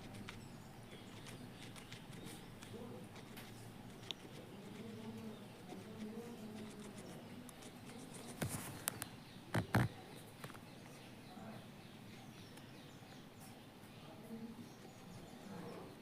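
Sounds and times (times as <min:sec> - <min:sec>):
guinea pig chewing carrot: 0:00.0 - 0:10.0.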